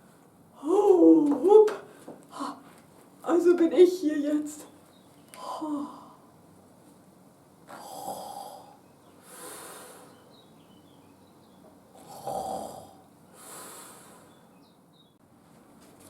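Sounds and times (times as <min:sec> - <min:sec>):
exaggerated snoring: 0:07.7 - 0:10.1, 0:11.9 - 0:14.2.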